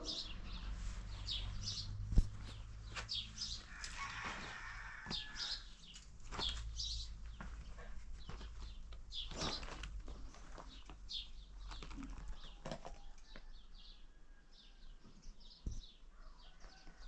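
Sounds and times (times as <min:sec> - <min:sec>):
small birds chirping: 0:00.0 - 0:12.6.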